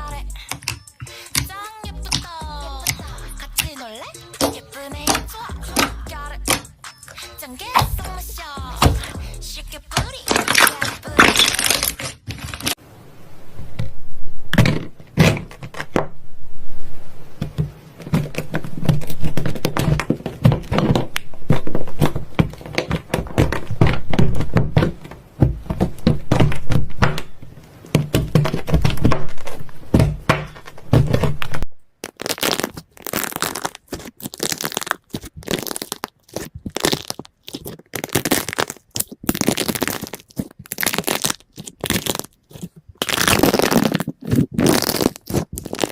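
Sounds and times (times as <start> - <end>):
slime crackling and popping: 10.1 - 12.8, 31.6 - 45.9.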